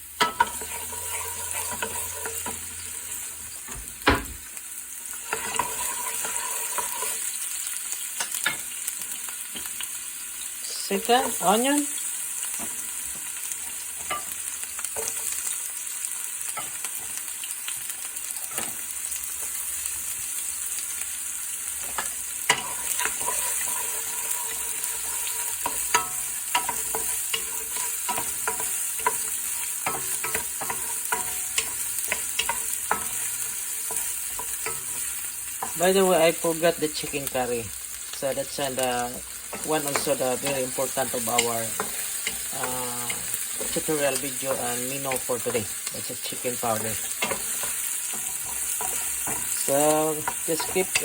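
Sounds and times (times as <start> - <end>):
onion and garlic sizzling in oil: 0.0 - 51.0
utensil scraping pan: 0.2 - 4.0, 5.1 - 7.4, 21.8 - 36.2, 38.8 - 51.0.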